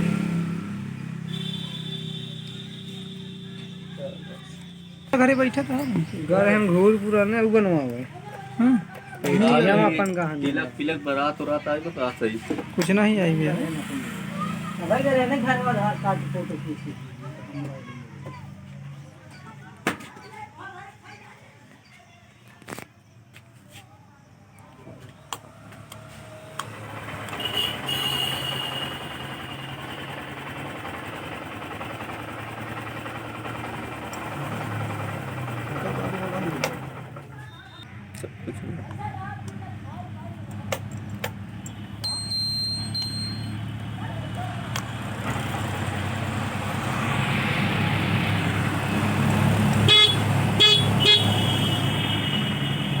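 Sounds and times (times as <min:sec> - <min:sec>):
motorcycle engine starting and idling: 0:00.0 - 0:11.2, 0:25.0 - 0:53.0
electric horn beeps: 0:01.2 - 0:05.2, 0:27.3 - 0:30.0, 0:41.6 - 0:43.9, 0:49.8 - 0:53.0.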